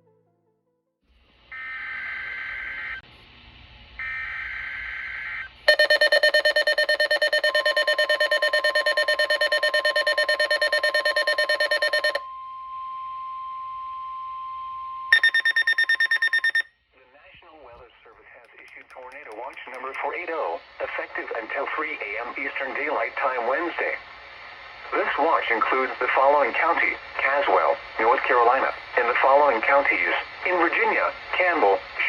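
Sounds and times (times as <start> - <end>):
rapidly pulsing alarm buzz: 5.7 - 12.2, 15.1 - 16.6
steady warning tone: 5.7 - 12.2, 15.1 - 16.6.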